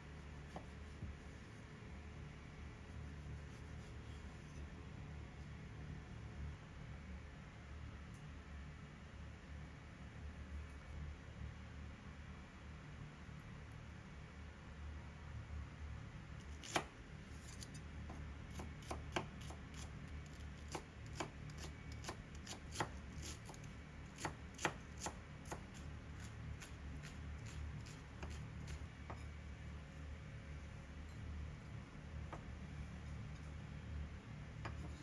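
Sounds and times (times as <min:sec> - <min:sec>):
steady low hum: 0:00.0 - 0:35.0
knife cutting on a board: 0:16.4 - 0:29.2, 0:34.6 - 0:35.0.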